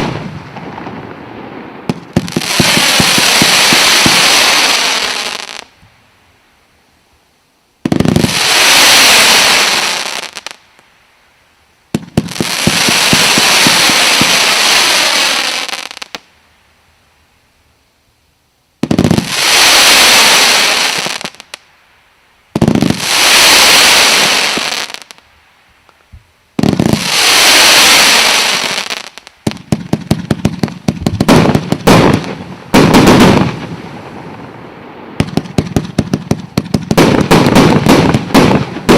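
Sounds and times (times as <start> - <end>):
fireworks battery firing: 26.6 - 34.4, 35.0 - 38.9.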